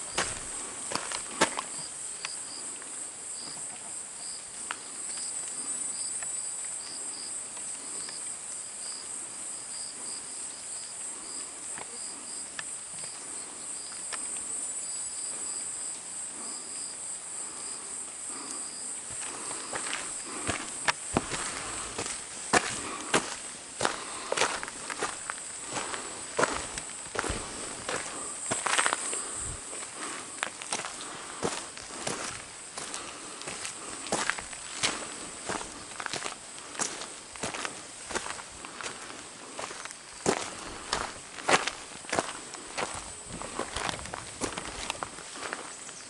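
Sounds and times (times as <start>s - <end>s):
footsteps: 0.0s - 1.9s, 18.3s - 45.8s
insects buzzing and chirping: 0.0s - 46.0s.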